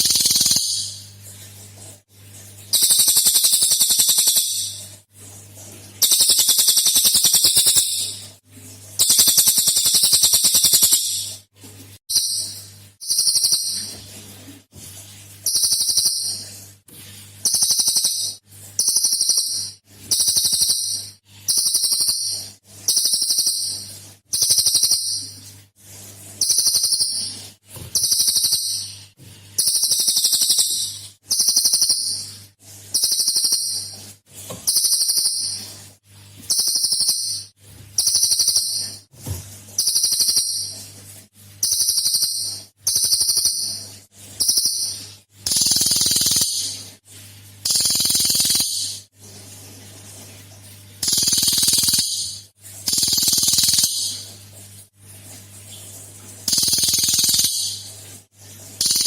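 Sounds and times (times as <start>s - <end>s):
songbird high-pitched trill: 0.0s - 1.0s, 2.8s - 4.8s, 6.0s - 8.2s, 9.0s - 11.3s, 12.1s - 13.9s, 15.5s - 16.4s, 17.4s - 23.8s, 24.4s - 25.4s, 26.4s - 27.4s, 28.0s - 29.0s, 29.6s - 32.3s, 33.0s - 33.9s, 34.7s - 35.6s, 36.5s - 39.0s, 39.8s - 40.7s, 41.6s - 43.8s, 44.4s - 46.8s, 47.7s - 49.0s, 51.0s - 54.2s, 56.5s - 57.8s.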